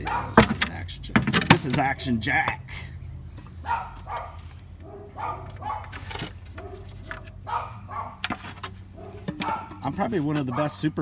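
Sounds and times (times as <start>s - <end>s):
dog barking: 0.0s - 0.4s, 3.6s - 6.0s, 6.6s - 8.2s, 8.9s - 9.8s, 10.4s - 10.8s.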